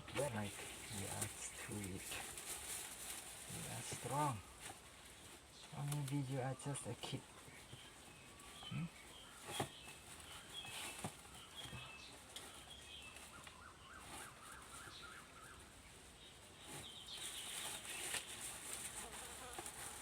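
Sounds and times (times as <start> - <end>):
rustling: 0.0 - 20.0
small birds chirping: 0.0 - 20.0
insect buzzing: 18.8 - 20.0.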